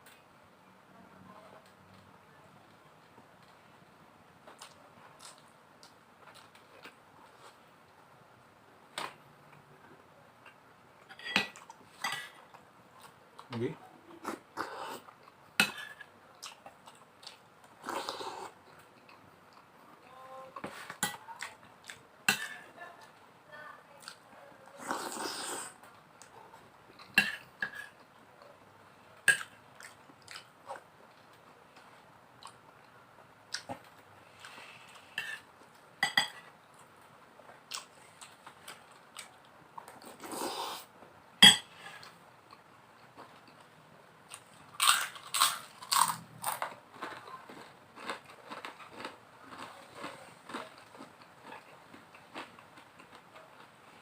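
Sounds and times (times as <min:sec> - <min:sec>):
person chewing food: 0:04.4 - 0:07.6, 0:14.2 - 0:19.9, 0:29.3 - 0:35.8, 0:36.7 - 0:40.8, 0:44.3 - 0:54.0
crackers crunching: 0:44.3 - 0:53.8.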